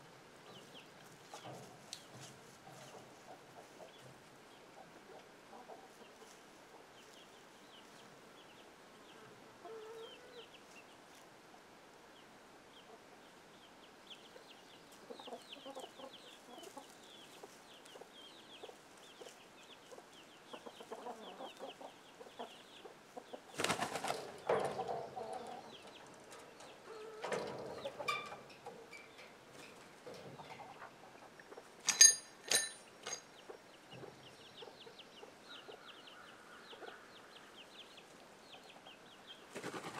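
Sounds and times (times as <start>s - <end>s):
chickens clucking: 0.4s - 11.6s, 12.7s - 32.1s, 33.0s - 39.9s
faint high peeping: 12.1s - 39.9s.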